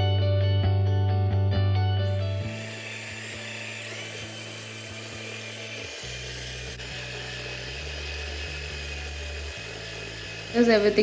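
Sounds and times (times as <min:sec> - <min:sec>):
food processor motor whining: 0:02.0 - 0:11.0.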